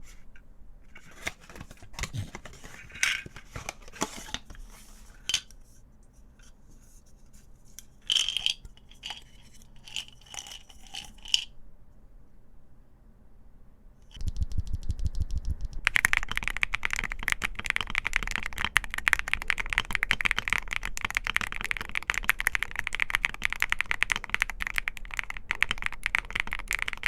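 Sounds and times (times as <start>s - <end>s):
mechanical keyboard key presses: 14.3s - 27.0s.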